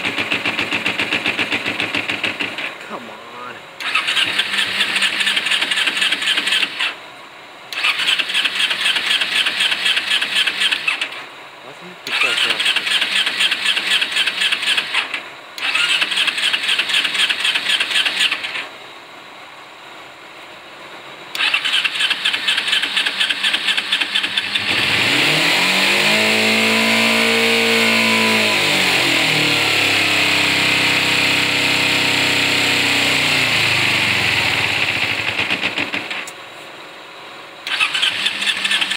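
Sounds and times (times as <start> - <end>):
motorcycle starter cranking: 0.0 - 2.8, 3.8 - 7.0, 7.7 - 11.2, 12.1 - 18.7, 21.3 - 25.5, 33.7 - 36.3, 37.7 - 38.9
motorcycle engine rough idle: 0.0 - 3.0, 3.8 - 7.0, 21.3 - 25.0, 29.2 - 36.3, 37.7 - 38.9.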